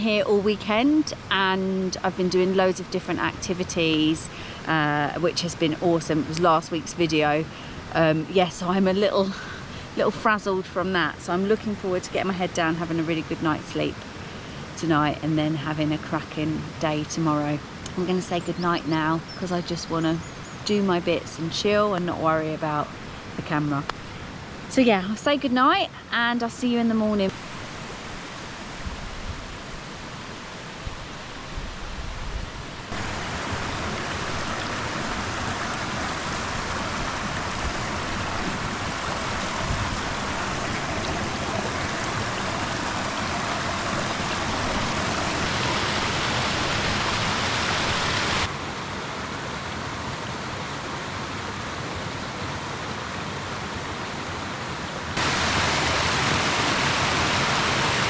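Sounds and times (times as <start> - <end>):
waterfall rushing water: 32.8 - 58.0.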